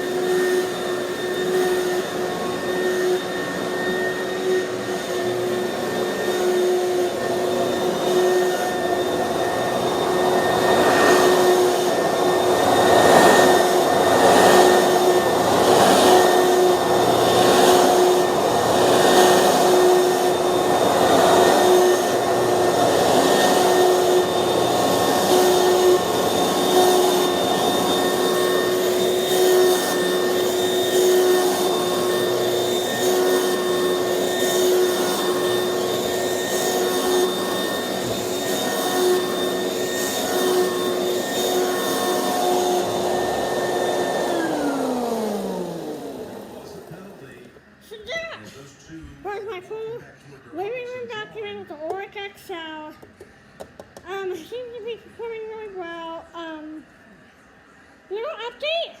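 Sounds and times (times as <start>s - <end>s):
vacuum cleaner running: 0.0s - 48.6s.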